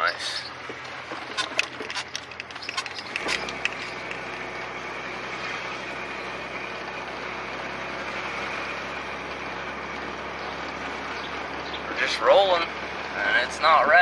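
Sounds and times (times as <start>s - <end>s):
car engine and road noise: 0.0s - 14.0s
sharp clicks: 1.2s - 4.5s.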